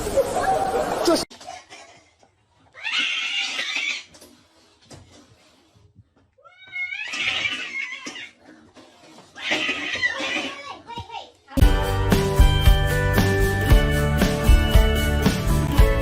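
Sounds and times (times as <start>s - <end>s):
cat crying and yowling: 2.8s - 4.1s, 6.4s - 8.4s.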